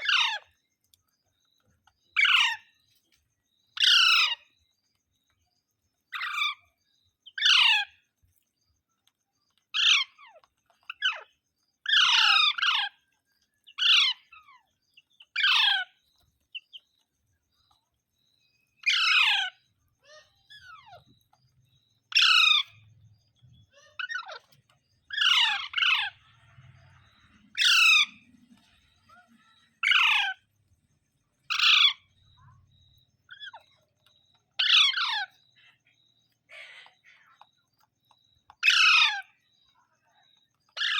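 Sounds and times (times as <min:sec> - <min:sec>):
parrot squawking: 0:18.8 - 0:21.0, 0:23.8 - 0:26.2, 0:27.5 - 0:28.3, 0:29.1 - 0:30.4, 0:31.5 - 0:32.1, 0:34.6 - 0:35.4, 0:38.6 - 0:39.4.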